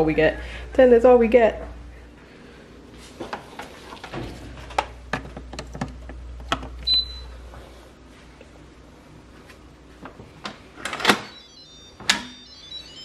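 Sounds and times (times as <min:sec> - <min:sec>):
short high beep: 0:11.3 - 0:13.0.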